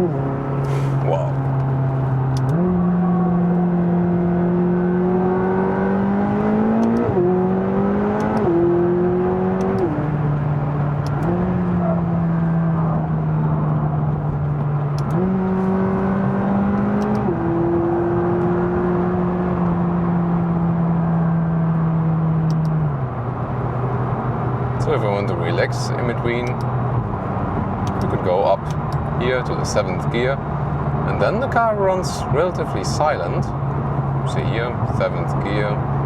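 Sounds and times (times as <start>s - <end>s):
car engine accelerating: 0.0s - 36.0s
gear changes: 0.0s - 36.0s.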